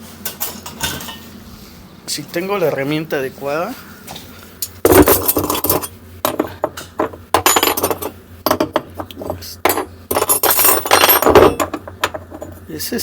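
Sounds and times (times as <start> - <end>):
metal hand tools clinking: 9.2 - 11.8.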